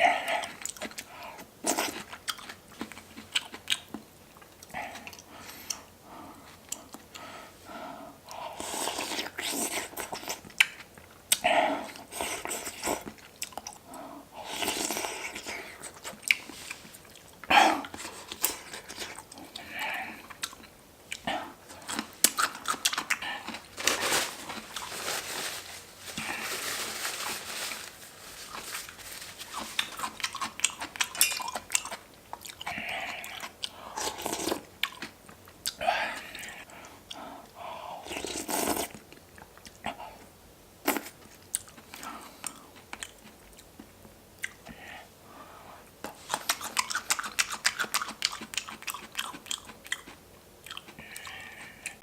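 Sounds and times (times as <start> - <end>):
person chewing and crunching food: 0.0 - 40.2, 40.8 - 45.0, 45.8 - 52.0
mouth clicks and smacks: 46.0 - 52.0.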